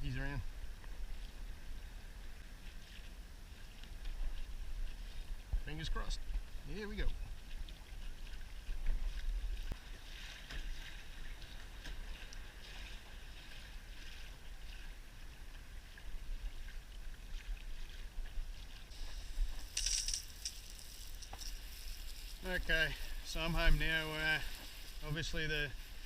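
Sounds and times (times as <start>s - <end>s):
wind rumble on microphone: 0.0s - 9.8s
water lapping against kayak hull: 6.2s - 26.0s.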